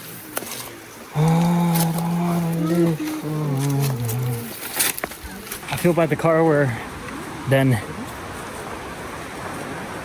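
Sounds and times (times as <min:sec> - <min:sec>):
man humming: 0:01.1 - 0:04.6.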